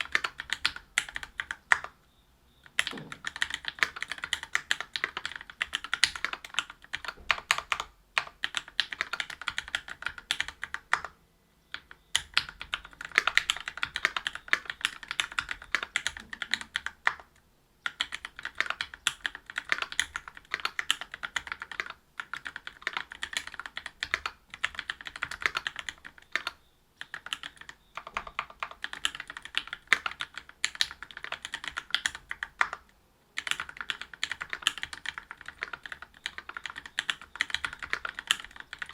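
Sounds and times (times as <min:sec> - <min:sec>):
mechanical keyboard typing: 0:00.0 - 0:02.0, 0:02.6 - 0:38.9.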